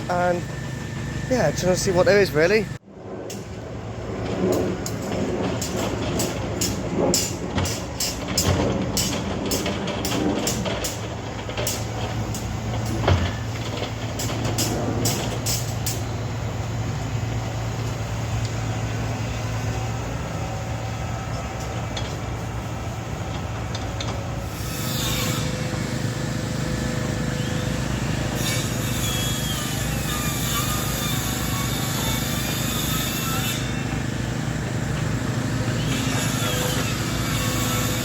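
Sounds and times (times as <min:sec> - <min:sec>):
vehicle engine humming: 0:00.0 - 0:24.6, 0:33.5 - 0:38.0.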